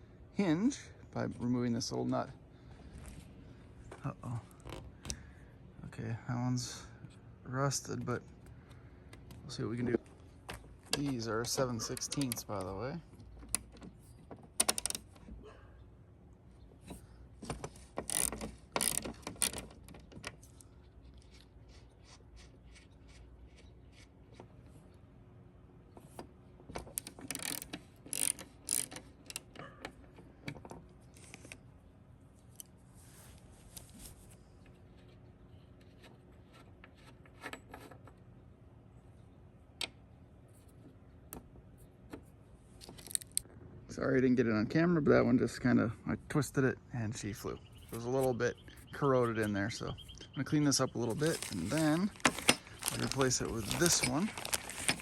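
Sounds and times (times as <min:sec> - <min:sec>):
ratchet wrench clicking: 0:18.0 - 0:19.6, 0:27.0 - 0:29.5.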